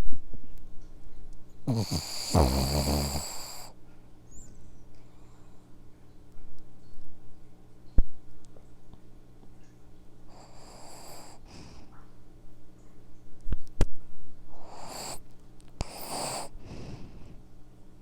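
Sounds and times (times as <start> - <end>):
dog snoring: 1.6 - 3.8, 10.3 - 11.9, 14.5 - 15.2, 15.8 - 17.4.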